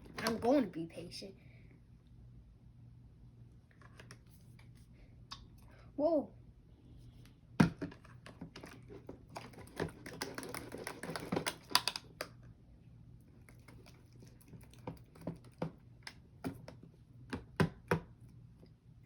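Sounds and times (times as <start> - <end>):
slime being stirred: 8.0 - 12.3, 13.3 - 17.6.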